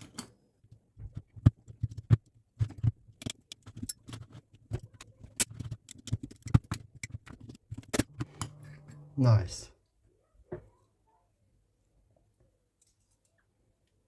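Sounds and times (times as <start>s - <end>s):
hand tools clicking and knocking: 1.0s - 9.0s.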